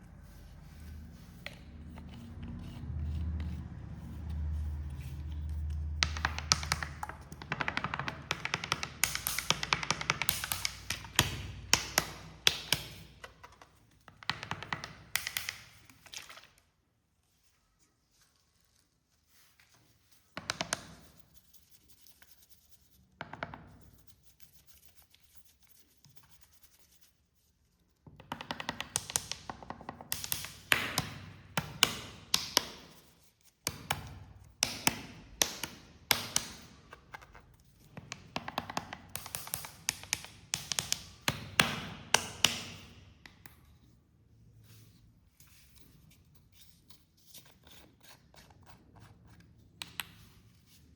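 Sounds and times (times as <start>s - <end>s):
sharp taps and clicks: 5.9s - 13.3s, 28.2s - 33.0s, 33.6s - 37.0s, 37.9s - 43.6s.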